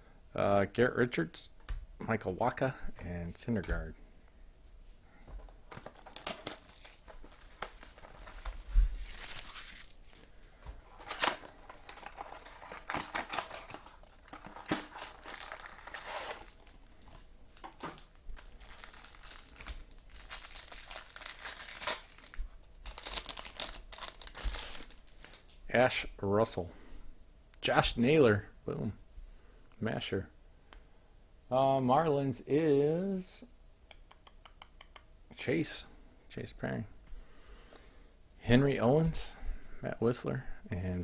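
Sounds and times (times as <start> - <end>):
foil wrappers tearing and crinkling: 5.7 - 10.3, 10.9 - 16.9, 17.6 - 25.6.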